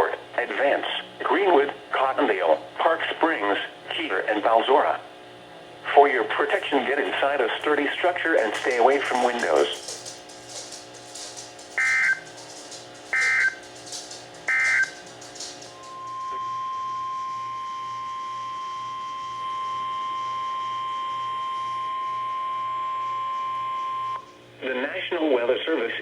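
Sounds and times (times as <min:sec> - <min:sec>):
steady warning alarm tone: 0:06.4 - 0:24.3
emergency alert data bursts: 0:11.8 - 0:12.4, 0:13.1 - 0:13.7, 0:14.5 - 0:15.1.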